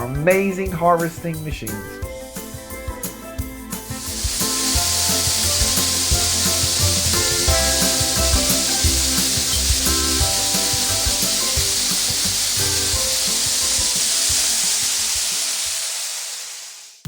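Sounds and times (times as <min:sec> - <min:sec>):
background music with a beat: 0:00.0 - 0:15.3
combine harvester hiss: 0:03.8 - 0:17.0.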